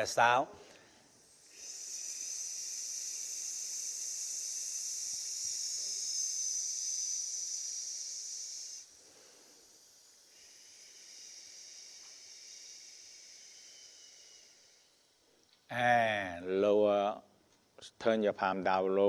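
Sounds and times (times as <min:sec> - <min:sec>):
person hissing through teeth: 0:01.1 - 0:15.2.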